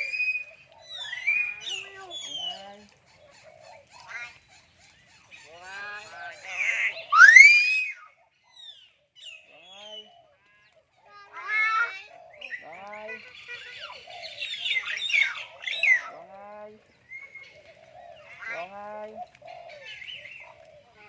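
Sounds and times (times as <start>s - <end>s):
birds whistling and chattering: 0.0s - 21.0s
loud rising bird whistle: 7.1s - 8.0s.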